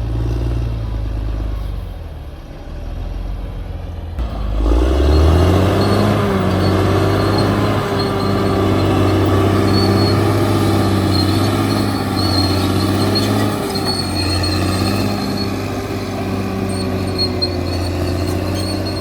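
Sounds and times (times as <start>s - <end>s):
bulldozer diesel engine running: 0.0s - 19.0s
thin high squeal: 5.0s - 19.0s.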